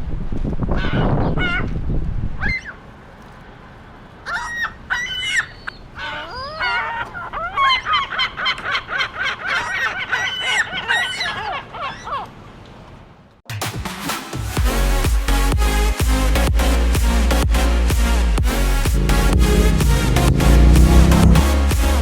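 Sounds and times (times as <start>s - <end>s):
seagulls calling: 2.4s - 2.8s, 4.1s - 12.4s
low rumble: 15.6s - 22.0s.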